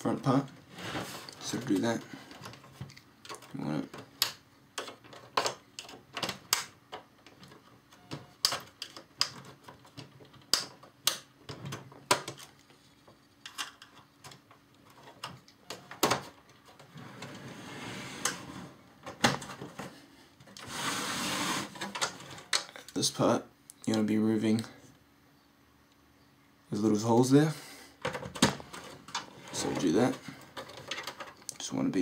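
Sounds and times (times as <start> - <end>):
plastic rubbing scrape: 0.6 - 2.0, 20.6 - 22.4.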